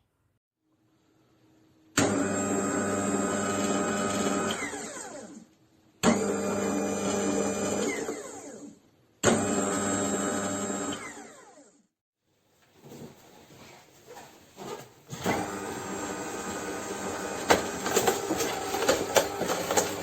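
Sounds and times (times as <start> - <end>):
juicer motor running: 2.0 - 5.2, 6.0 - 8.6, 9.2 - 11.6, 15.2 - 20.0.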